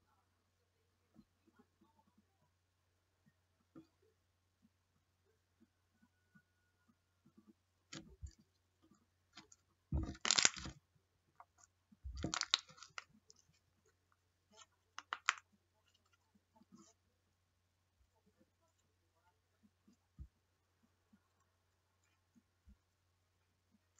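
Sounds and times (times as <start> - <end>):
slime crackling and popping: 9.4 - 10.8, 12.1 - 13.1, 15.0 - 15.4.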